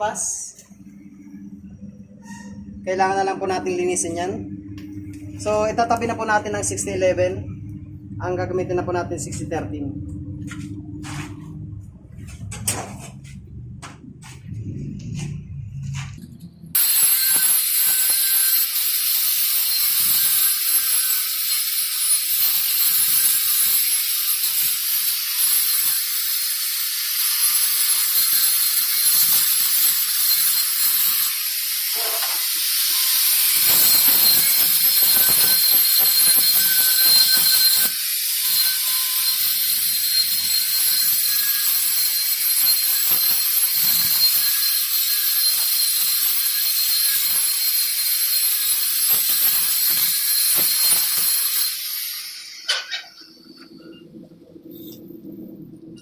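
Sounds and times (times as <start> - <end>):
arc welding crackling sizzle: 16.8 - 53.6.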